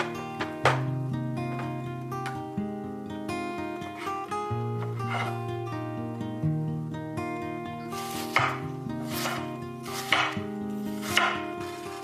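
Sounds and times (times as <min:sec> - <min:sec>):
guitar music: 0:00.0 - 0:12.0
knife chopping on cutting board: 0:08.2 - 0:10.4, 0:11.0 - 0:11.8.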